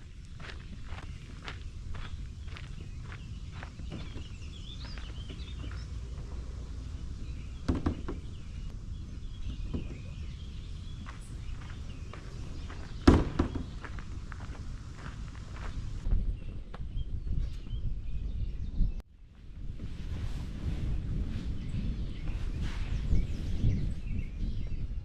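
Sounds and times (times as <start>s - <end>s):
small birds chirping: 0.0s - 19.0s
low wind rumble: 0.0s - 25.0s
loud thumps: 7.6s - 8.7s, 13.0s - 14.1s.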